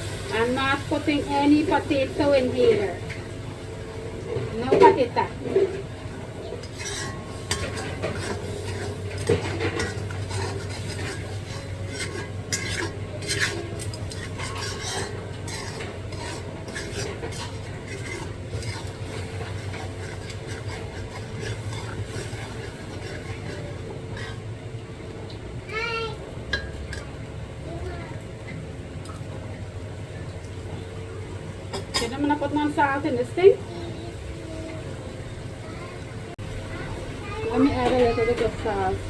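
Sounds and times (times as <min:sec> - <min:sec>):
steady low hum: 0:00.0 - 0:39.0
utensil scraping a cooking pot: 0:04.2 - 0:24.6
utensil clinking against pot: 0:06.5 - 0:24.4.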